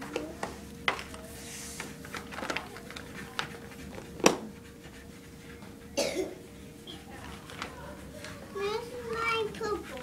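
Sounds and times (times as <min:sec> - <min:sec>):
taps and clicks of colouring supplies: 0:04.2 - 0:04.4.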